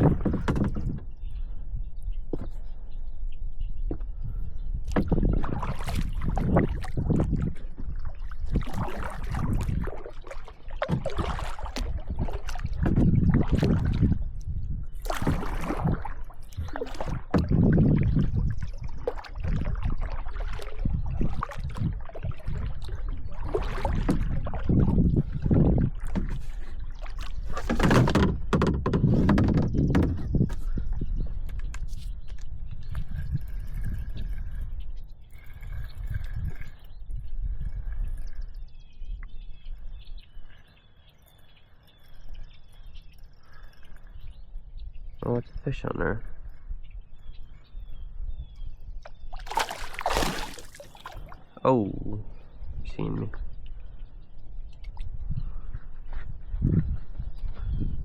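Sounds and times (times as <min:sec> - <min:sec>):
knocks on boat hull: 0:00.0 - 0:01.0, 0:27.6 - 0:30.6
water sloshing around boat: 0:00.0 - 0:47.8, 0:48.4 - 0:57.9.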